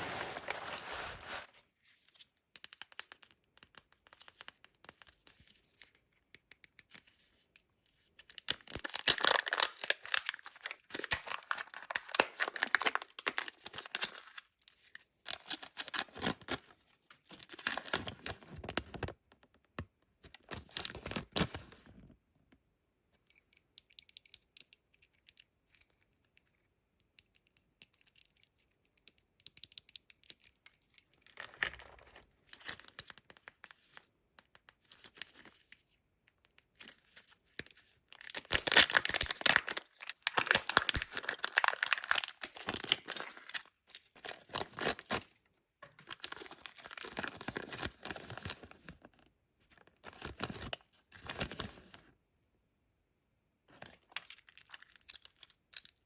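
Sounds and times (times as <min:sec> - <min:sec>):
wrappers torn and crinkled: 0:00.0 - 0:01.6, 0:08.4 - 0:14.4, 0:38.1 - 0:45.2.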